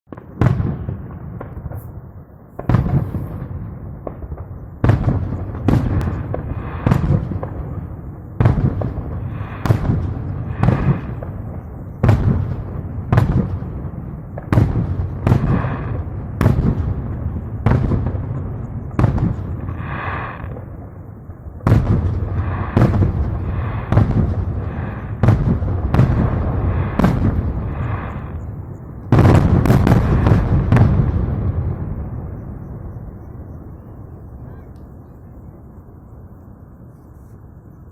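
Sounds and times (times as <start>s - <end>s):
fireworks shells bursting: 0.2s - 7.8s.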